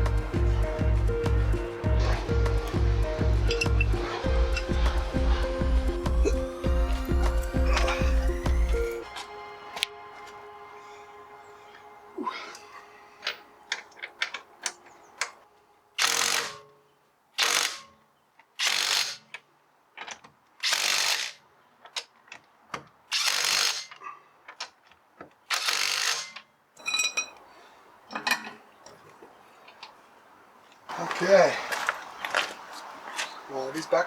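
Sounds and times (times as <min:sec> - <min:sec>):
ratchet wrench ratcheting: 0:16.0 - 0:16.6, 0:17.4 - 0:17.9, 0:18.6 - 0:19.3, 0:20.6 - 0:21.4, 0:23.1 - 0:24.0, 0:25.5 - 0:26.4.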